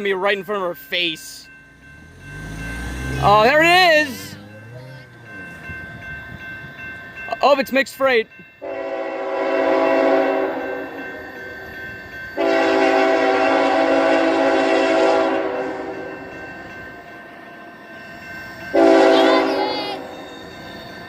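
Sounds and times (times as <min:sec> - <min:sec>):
locomotive air horn blasts: 0:08.6 - 0:11.0, 0:12.4 - 0:16.0, 0:18.7 - 0:19.7.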